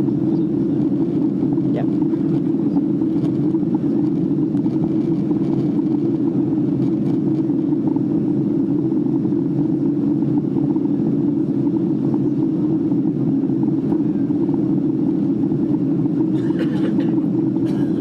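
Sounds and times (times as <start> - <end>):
aircraft cabin engine rumble: 0.0 - 18.0.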